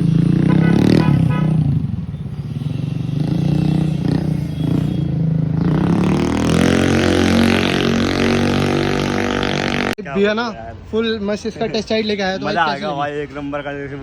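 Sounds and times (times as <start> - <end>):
scooter engine revving: 0.0 - 10.0.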